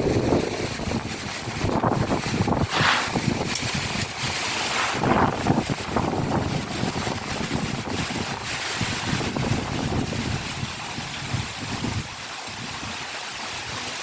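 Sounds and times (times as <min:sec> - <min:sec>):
strong wind gusting: 0:00.0 - 0:13.0
wind buffeting microphone: 0:00.0 - 0:14.0.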